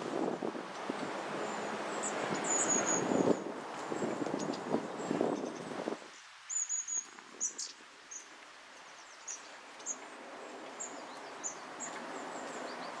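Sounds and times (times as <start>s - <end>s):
high-pitched bird calls: 1.4s - 3.5s.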